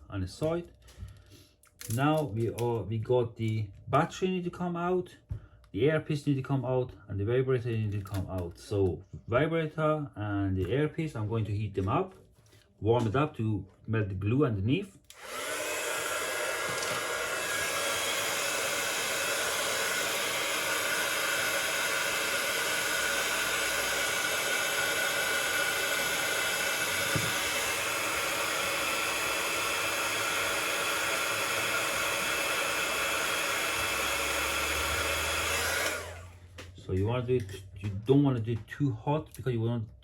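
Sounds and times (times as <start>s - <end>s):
hot-air gun blowing: 15.1s - 36.4s.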